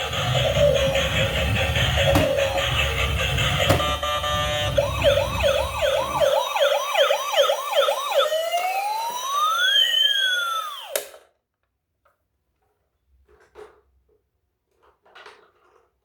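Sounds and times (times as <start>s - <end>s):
toy electronic siren: 0.0s - 11.2s.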